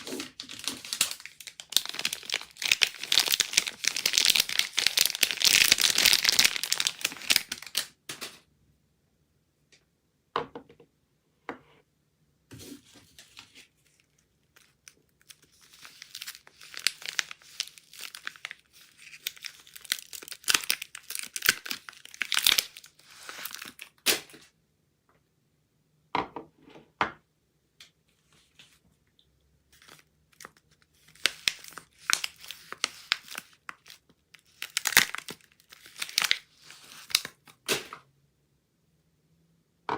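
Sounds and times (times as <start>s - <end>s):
wrappers crinkling and tearing: 0.0s - 8.4s, 13.2s - 24.5s, 29.7s - 38.0s.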